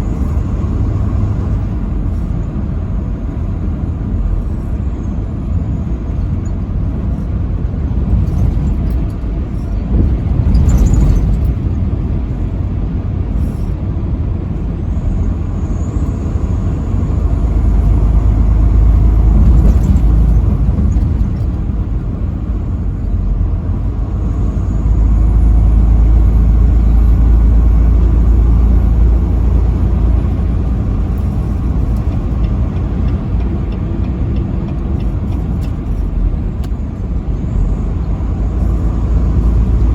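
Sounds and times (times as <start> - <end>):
vehicle engine and road noise: 0.0 - 39.9.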